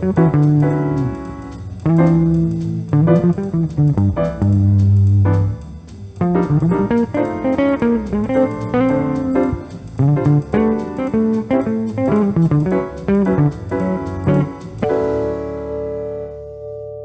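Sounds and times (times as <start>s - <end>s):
bass line: 0.0s - 17.0s
jazz guitar playing: 0.0s - 17.0s.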